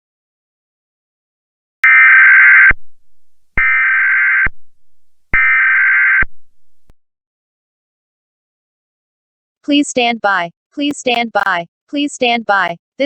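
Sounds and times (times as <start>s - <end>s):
raspy two-tone data warble: 1.8s - 6.9s.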